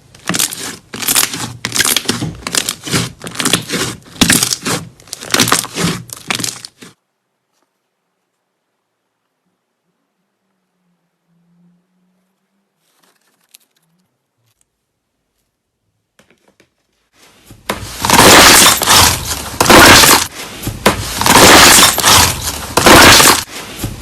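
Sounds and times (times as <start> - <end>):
slime crackling and crunching: 0.2 - 7.0, 17.8 - 23.5.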